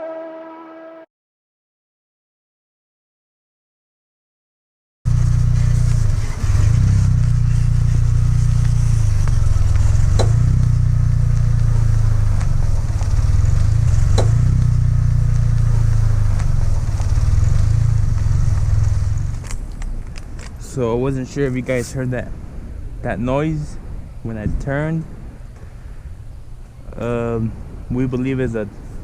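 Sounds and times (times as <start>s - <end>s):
car road rumble: 5.1s - 29.0s
suspension popping clicks: 5.2s - 20.7s.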